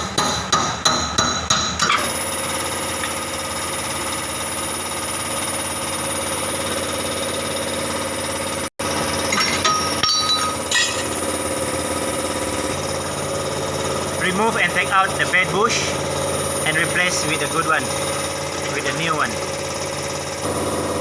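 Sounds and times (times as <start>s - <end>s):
power tool rattling and whining: 1.9s - 14.2s
short squeaks and clinks: 9.3s - 12.7s.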